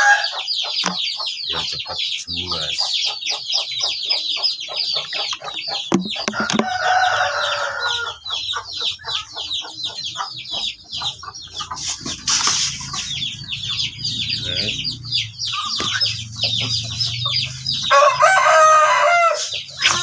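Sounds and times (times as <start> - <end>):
chickens peeping rapidly: 0.0 - 20.0
low drawn-out chicken call: 17.9 - 20.0.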